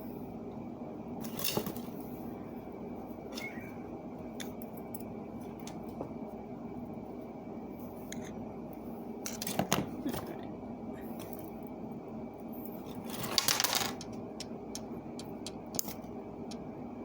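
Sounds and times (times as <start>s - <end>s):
wire clicking and clinking: 13.3s - 16.6s.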